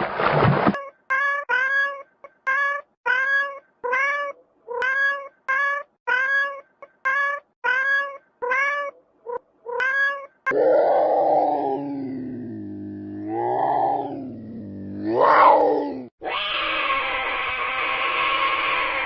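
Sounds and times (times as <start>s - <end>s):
cat meowing: 0.8s - 10.5s, 16.2s - 19.0s.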